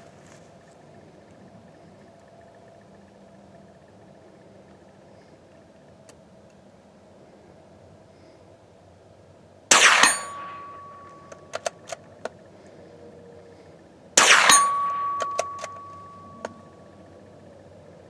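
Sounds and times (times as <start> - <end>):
rifle shots: 9.7 - 12.0, 14.2 - 16.5
steel gong ringing: 10.0 - 11.5, 14.2 - 16.8.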